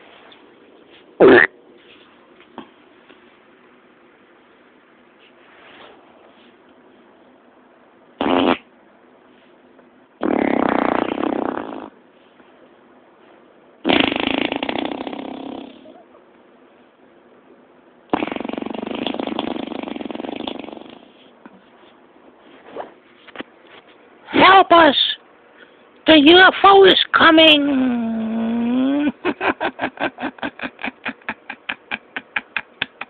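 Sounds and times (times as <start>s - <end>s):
buzzy fart noises: 1.2s - 1.5s, 8.2s - 8.7s, 10.2s - 12.0s, 13.8s - 16.0s, 18.1s - 21.3s.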